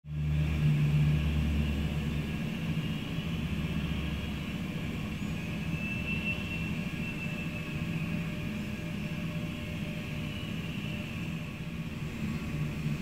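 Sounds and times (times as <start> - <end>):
jet engines running: 0.1 - 13.0.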